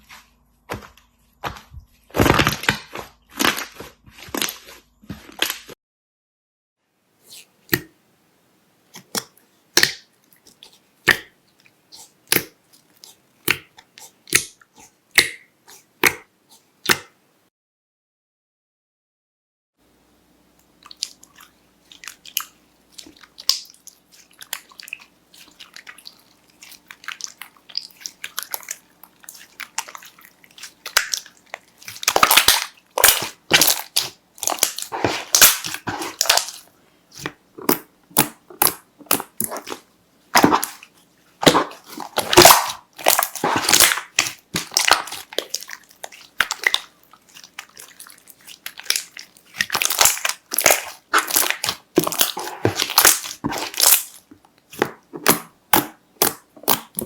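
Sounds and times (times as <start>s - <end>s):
slime clicking and crackling: 22.0s - 39.8s, 40.4s - 57.0s.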